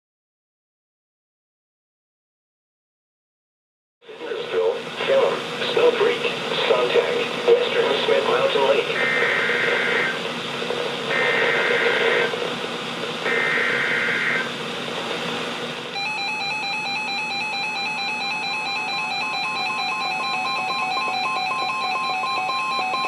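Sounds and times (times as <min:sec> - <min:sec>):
data header bursts: 0:08.8 - 0:10.2, 0:11.1 - 0:12.4, 0:13.2 - 0:14.6
alternating electronic alert tones: 0:09.0 - 0:10.2, 0:11.1 - 0:12.3, 0:13.3 - 0:14.5, 0:15.9 - 0:23.0.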